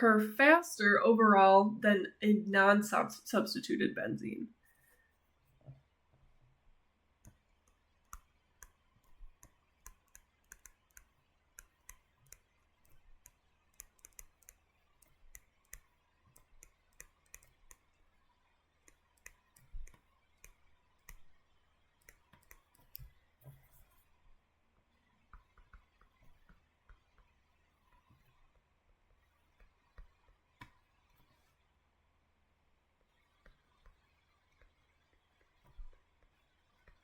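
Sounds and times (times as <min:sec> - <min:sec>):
stylus tapping on tablet screen: 0:07.2 - 0:17.9, 0:18.9 - 0:21.3, 0:25.3 - 0:27.4.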